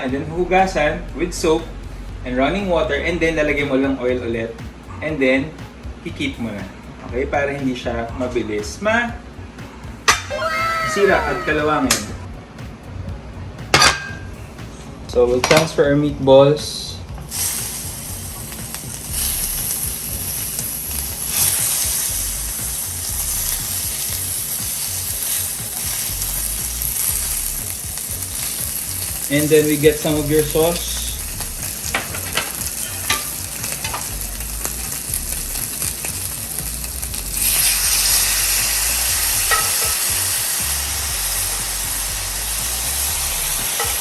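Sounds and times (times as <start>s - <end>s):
background music: 0.0s - 44.0s
meatballs sizzling on hot plate: 17.3s - 44.0s
utensil clinking on plate: 39.5s - 40.0s.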